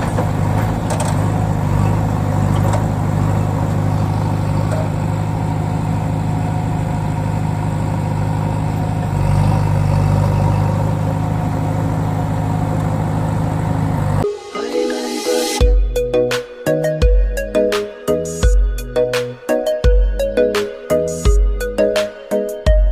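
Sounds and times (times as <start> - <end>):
vehicle engine running: 0.0 - 14.2.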